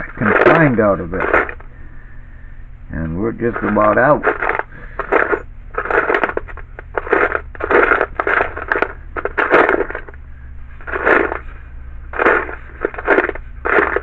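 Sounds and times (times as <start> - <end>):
screws rattling in a can: 0.0 - 1.6, 3.4 - 10.2, 10.8 - 11.5, 12.1 - 14.0
low steady hum: 0.0 - 14.0.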